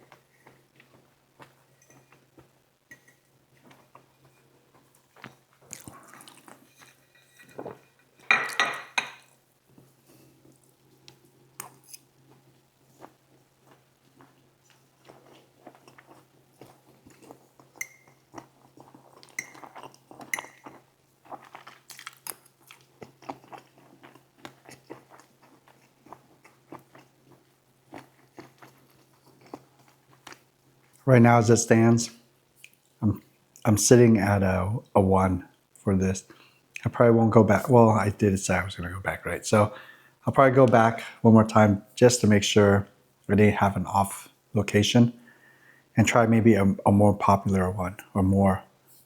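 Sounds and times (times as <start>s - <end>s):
faint steady hum: 0.0s - 49.0s
chewing: 3.6s - 7.0s, 11.6s - 31.0s.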